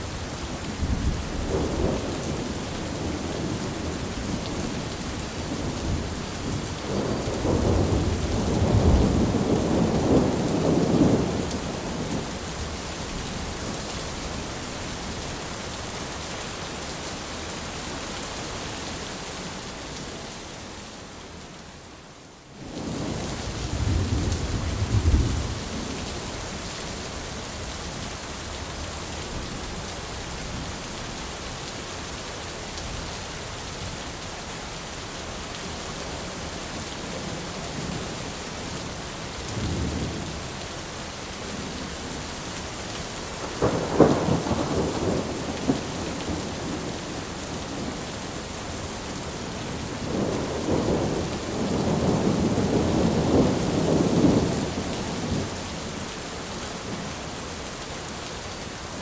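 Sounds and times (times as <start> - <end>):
rain hissing: 22.6 - 59.0
thunder rolling: 43.6 - 46.9.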